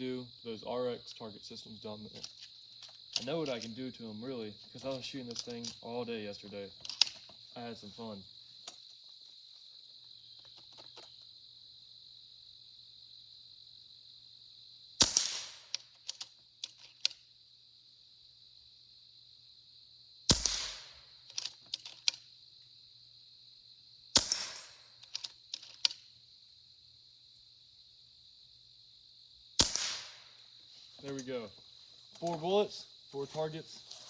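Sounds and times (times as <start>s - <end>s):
air rifle shot crack: 15.0s - 15.7s, 20.3s - 20.9s, 24.2s - 24.7s, 29.6s - 30.3s.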